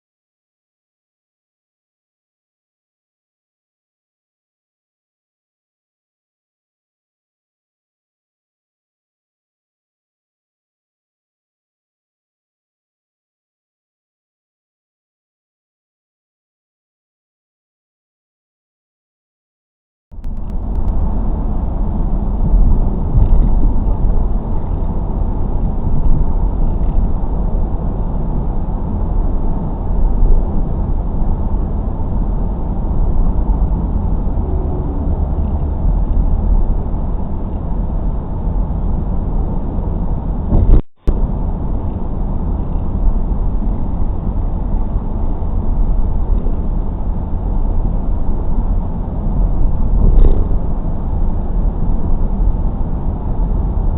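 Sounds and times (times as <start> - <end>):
car tyres and engine rumble: 20.2 - 53.9.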